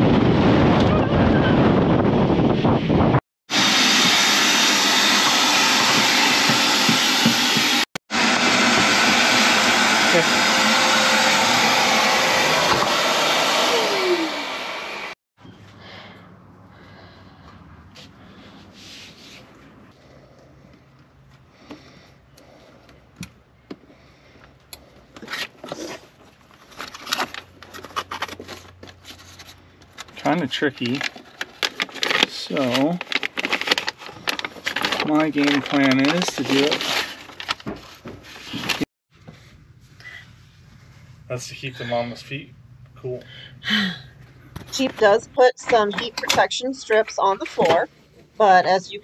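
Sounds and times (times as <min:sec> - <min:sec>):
shop vac running: 0:03.5 - 0:15.2, 0:32.0 - 0:38.8.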